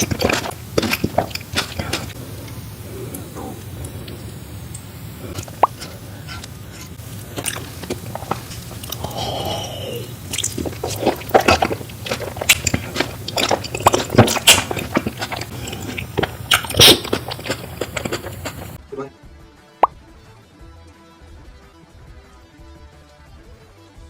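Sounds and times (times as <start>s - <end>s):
crunchy bites and chewing: 0.0s - 4.1s, 4.7s - 18.8s.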